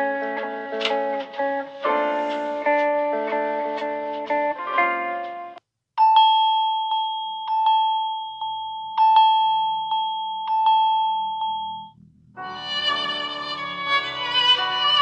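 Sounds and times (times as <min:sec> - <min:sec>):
bell-like ringtone: 0:06.0 - 0:15.0
faint low hum: 0:11.6 - 0:13.9.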